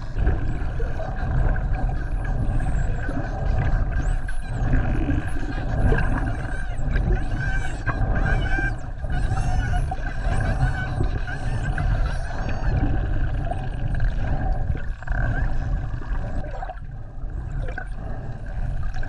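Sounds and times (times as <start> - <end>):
dolphins whistling: 0.5 - 13.9
low underwater rumble: 4.6 - 19.0.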